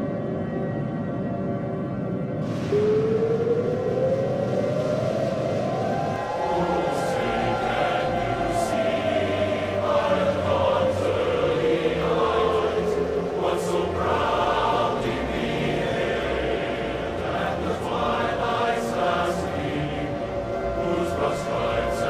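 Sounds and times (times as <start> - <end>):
choir singing an anthem: 5.6 - 22.0.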